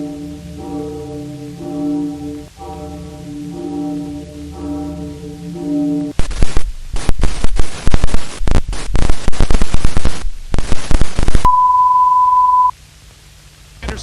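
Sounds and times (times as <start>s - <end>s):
harsh static and glitch noise: 6.2s - 12.7s, 13.8s - 14.0s.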